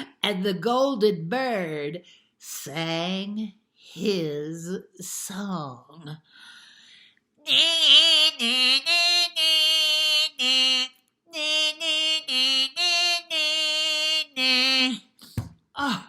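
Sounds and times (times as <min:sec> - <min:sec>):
woman singing wordless tune: 0:07.4 - 0:16.0.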